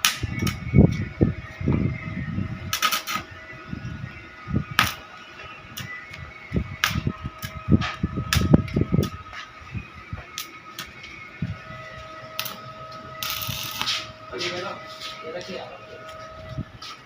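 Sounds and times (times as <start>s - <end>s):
arc welding crackling and popping: 0.0s - 17.0s
faint steady whine: 0.0s - 17.0s.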